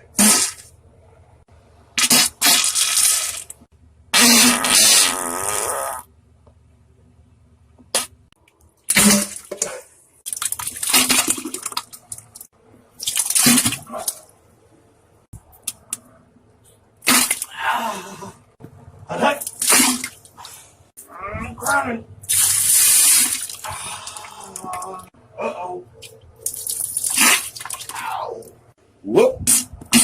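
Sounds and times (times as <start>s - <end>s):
wet fart sounds: 0.1s - 0.7s, 2.0s - 6.1s, 8.9s - 9.6s, 22.3s - 23.9s, 26.4s - 27.9s, 29.5s - 30.0s.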